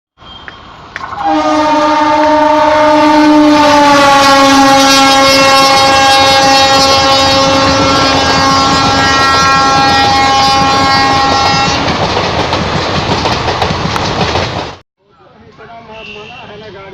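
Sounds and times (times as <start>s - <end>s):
locomotive horn blast: 1.1s - 12.0s.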